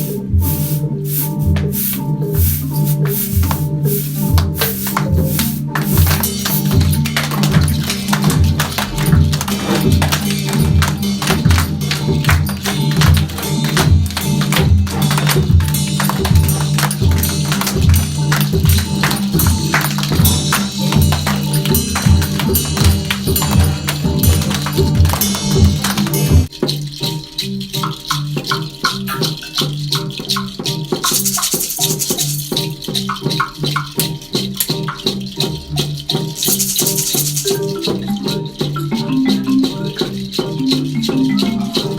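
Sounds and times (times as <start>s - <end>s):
high hissing sound: 0.0s - 26.2s
clicking percussion: 0.0s - 41.9s
low pitched repeating pattern: 0.0s - 41.9s
music with steady beat: 0.0s - 41.9s.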